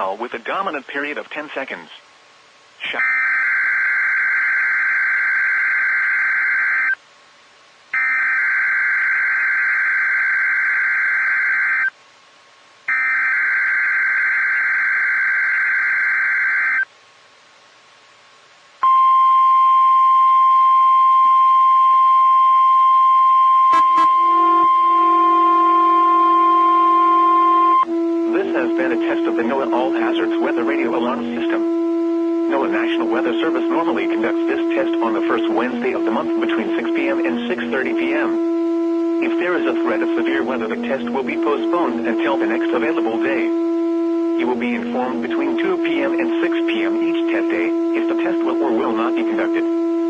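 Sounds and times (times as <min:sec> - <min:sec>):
weather radio alarm tone: 0:02.8 - 0:07.0, 0:08.0 - 0:11.9, 0:12.9 - 0:16.9, 0:18.8 - 0:50.0
lower tone: 0:18.8 - 0:30.7.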